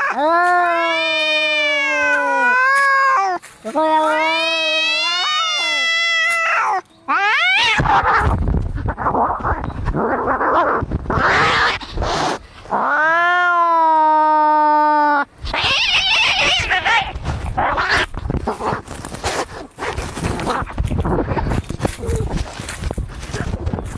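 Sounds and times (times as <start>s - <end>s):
cat yowling: 0.0s - 8.3s, 12.7s - 18.1s
cats screeching: 0.0s - 18.8s
cats hissing and spitting: 7.6s - 12.9s, 15.4s - 23.6s.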